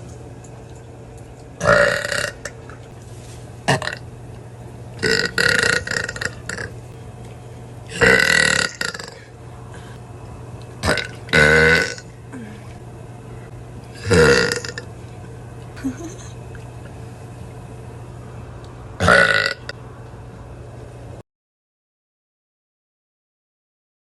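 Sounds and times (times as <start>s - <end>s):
woman burping loudly: 1.6s - 2.5s, 3.7s - 4.0s, 5.0s - 6.7s, 7.9s - 9.3s, 10.8s - 12.8s, 14.0s - 14.9s, 19.0s - 19.7s.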